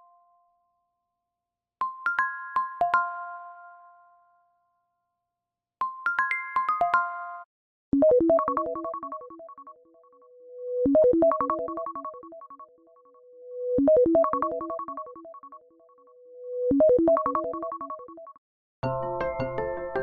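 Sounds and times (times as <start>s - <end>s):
phone ringtone melody: 16.8s - 18.3s.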